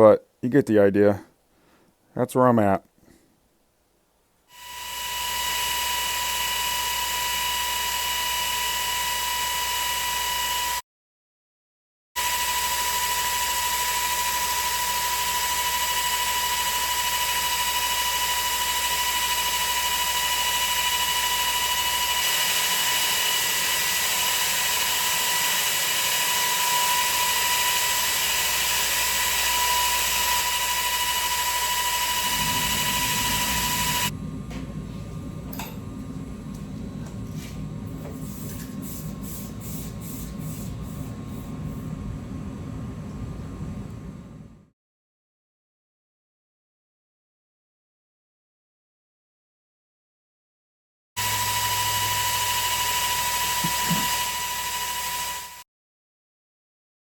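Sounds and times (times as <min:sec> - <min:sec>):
power tool motor running: 0:04.5 - 0:10.8, 0:12.2 - 0:34.6, 0:51.2 - 0:55.6.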